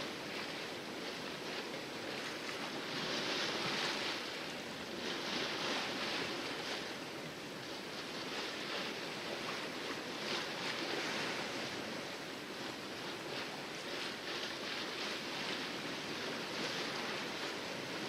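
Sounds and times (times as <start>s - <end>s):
water splashing against a hull: 0.0s - 18.0s.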